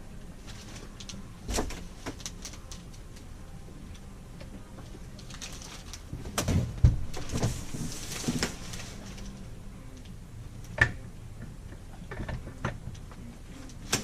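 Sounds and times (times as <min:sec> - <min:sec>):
knocks and clunks of hand work: 0:10.7 - 0:13.3.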